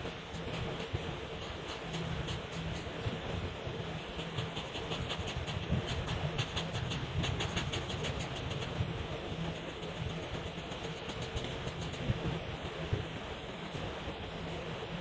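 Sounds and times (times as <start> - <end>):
low steady hum: 0.0 - 15.0
markers scratching on paper: 0.3 - 12.4.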